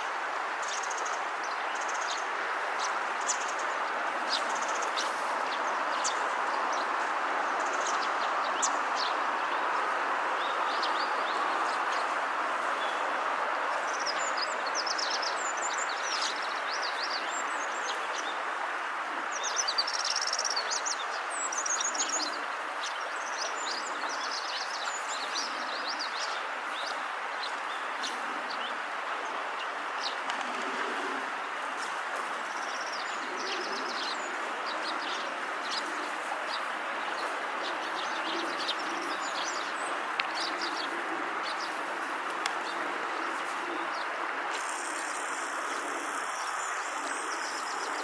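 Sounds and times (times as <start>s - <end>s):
sparrows chirping: 43.7s - 48.0s.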